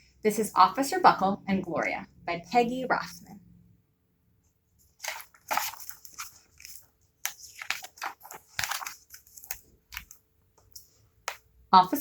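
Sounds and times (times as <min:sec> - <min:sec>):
book pages rustling and crinkling: 0:04.8 - 0:11.5.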